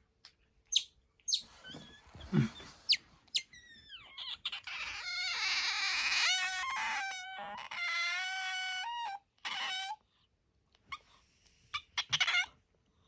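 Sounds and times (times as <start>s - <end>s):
otter chirping: 0.7s - 8.8s
otter high-pitched squeak: 0.7s - 8.9s.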